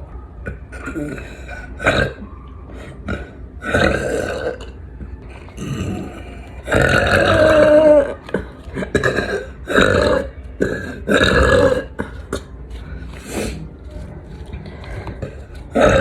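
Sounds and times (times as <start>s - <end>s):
woman burping loudly: 0.4s - 2.3s, 3.0s - 4.8s, 5.5s - 12.5s, 15.2s - 16.0s.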